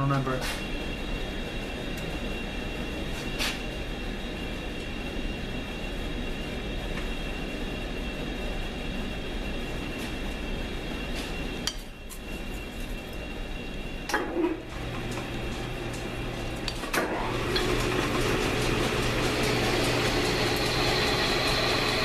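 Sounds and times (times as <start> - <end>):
lathe whining: 12.2 - 22.0.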